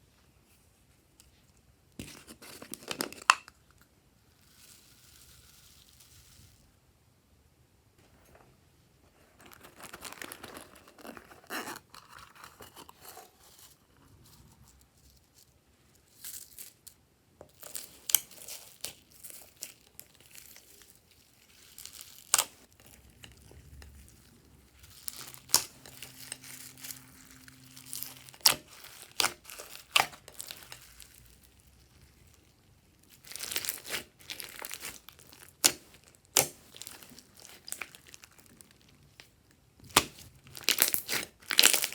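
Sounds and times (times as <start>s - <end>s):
slime crackling and tearing: 17.6s - 41.9s.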